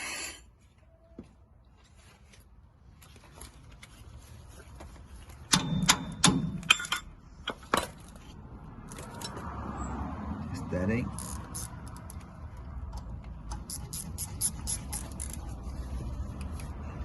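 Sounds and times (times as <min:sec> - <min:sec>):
metal tools clinking together: 0:06.6 - 0:07.2.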